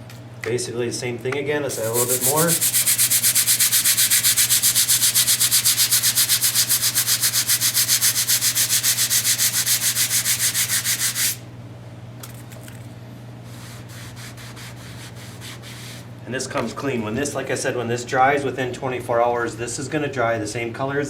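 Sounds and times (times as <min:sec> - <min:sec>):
scrubbing tile floor: 0:01.7 - 0:11.4, 0:13.5 - 0:16.0.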